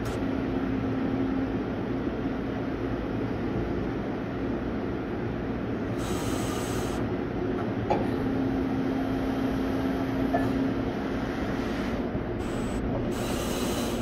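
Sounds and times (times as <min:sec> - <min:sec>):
steady hum: 0:00.0 - 0:14.0
milling machine running: 0:10.8 - 0:14.0.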